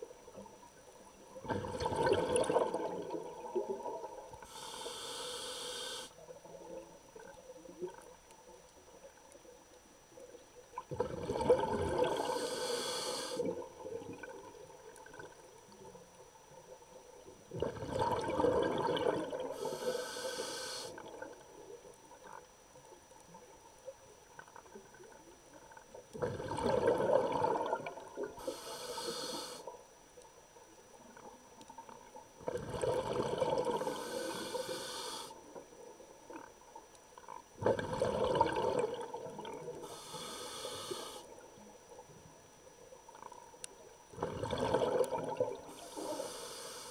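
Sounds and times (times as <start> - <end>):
exhaled bubbles gurgling underwater: 0.0 - 9.6, 10.2 - 22.5, 23.3 - 29.8, 30.5 - 46.8
regulator hiss: 4.4 - 6.2, 12.1 - 13.5, 19.6 - 21.0, 28.4 - 29.8, 33.8 - 35.6, 39.8 - 41.4, 45.7 - 46.9.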